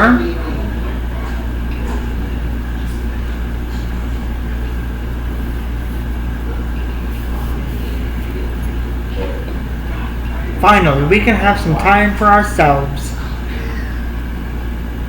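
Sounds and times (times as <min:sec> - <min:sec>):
low rumble and hum: 0:00.0 - 0:15.0.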